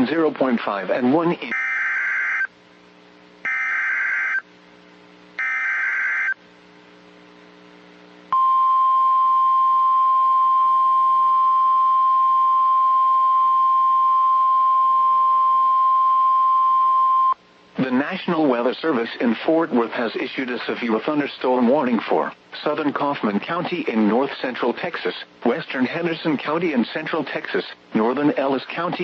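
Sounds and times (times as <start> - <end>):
steady alarm tone: 1.5 - 2.5, 3.5 - 4.4, 5.4 - 6.4
warbling data bursts: 3.5 - 4.4, 5.4 - 6.4.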